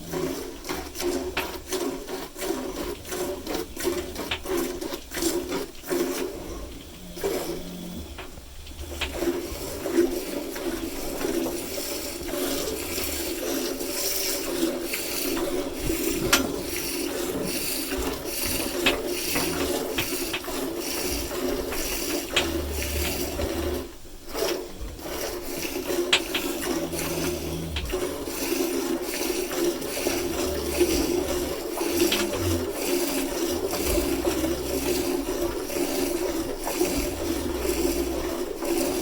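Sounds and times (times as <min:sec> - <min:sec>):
milk squirting into a pail: 0:08.8 - 0:39.0.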